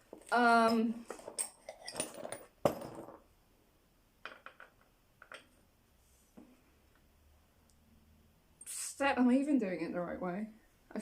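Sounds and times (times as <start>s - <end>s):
metal tools clinking: 0.5s - 3.0s.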